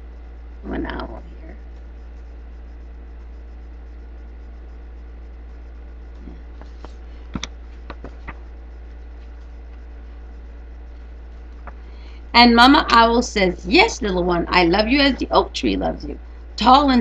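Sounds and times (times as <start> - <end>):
low background hum: 0.0 - 17.0.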